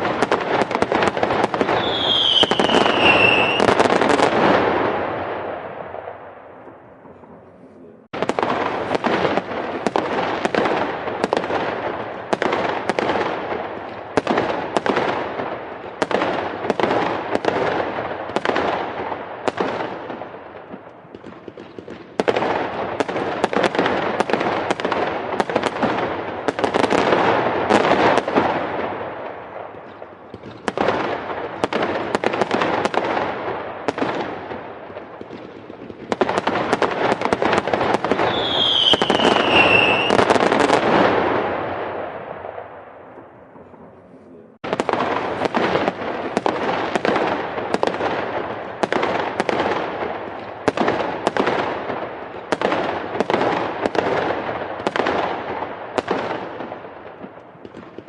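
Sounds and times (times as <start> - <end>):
fireworks bangs and crackle: 0.0 - 58.0
falling firework whistle: 1.5 - 4.2, 38.1 - 41.1.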